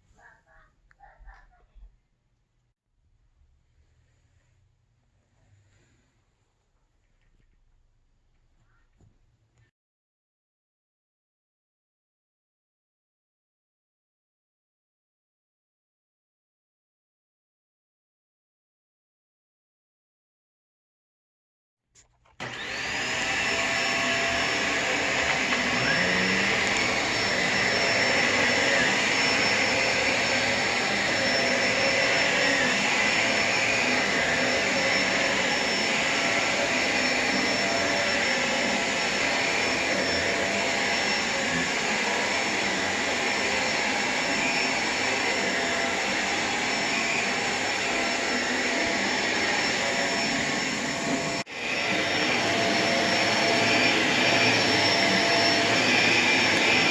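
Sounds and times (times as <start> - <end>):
vacuum cleaner motor whining: 22.4 - 56.9.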